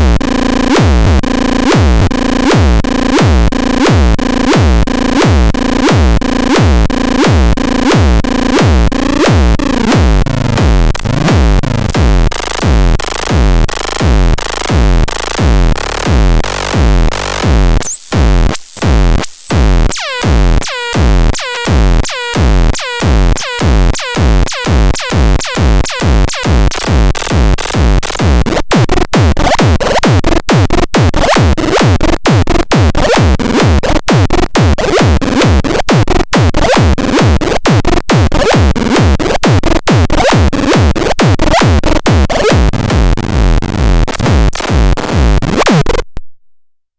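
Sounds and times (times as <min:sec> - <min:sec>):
minimal techno music: 0:00.0 - 0:46.2.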